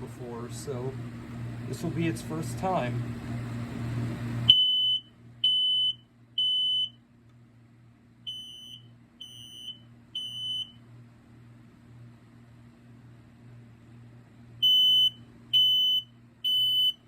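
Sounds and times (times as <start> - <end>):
smoke alarm high-pitched beeps: 4.5 - 7.0, 8.3 - 10.8, 14.6 - 17.0.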